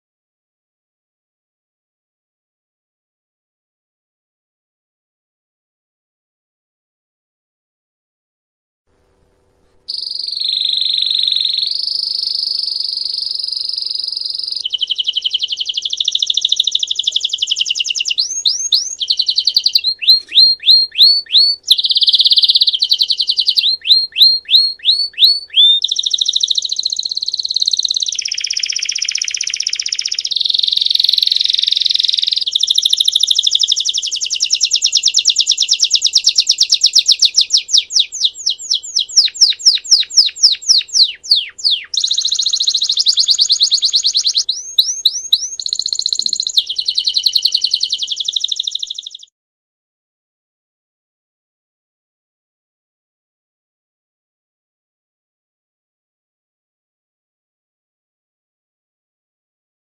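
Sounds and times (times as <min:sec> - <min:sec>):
canary singing trills: 0:09.9 - 0:49.3.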